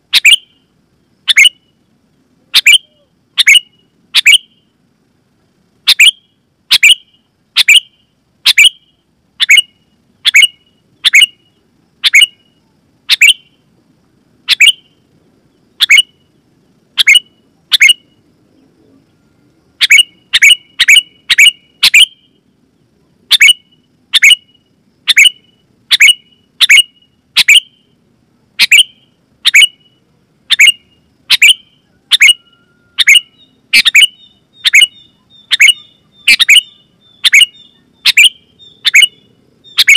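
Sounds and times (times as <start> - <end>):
bird chirping sharply: 0.1 - 0.6, 1.3 - 1.8, 2.6 - 4.7, 5.9 - 13.6, 14.5 - 15.0, 15.8 - 16.4, 17.0 - 18.2, 19.8 - 22.4, 23.3 - 28.0, 28.6 - 39.9.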